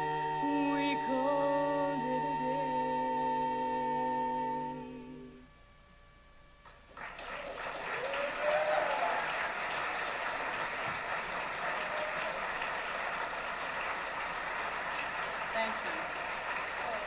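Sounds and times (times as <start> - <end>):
audience applause: 6.9 - 17.0
person cheering: 8.0 - 9.3.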